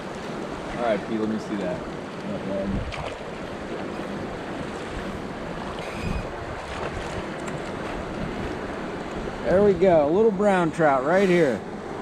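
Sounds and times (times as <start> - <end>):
river water rushing: 0.0 - 12.0
wind buffeting microphone: 2.5 - 10.4.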